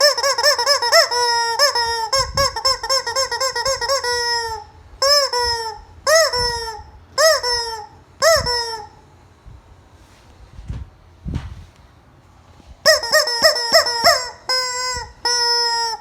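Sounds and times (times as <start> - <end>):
rubber chicken toy squawking: 0.0 - 9.0, 12.8 - 16.0.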